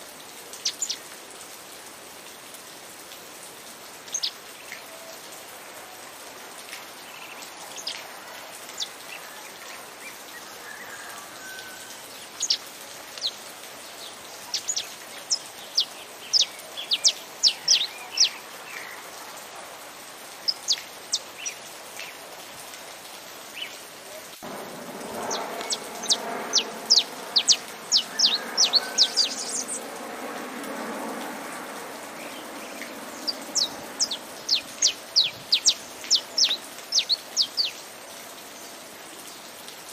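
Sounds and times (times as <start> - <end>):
fuller lower rain noise: 0.0 - 39.9
rain hiss: 0.0 - 39.9
finch chirping: 25.2 - 29.8, 32.8 - 37.8.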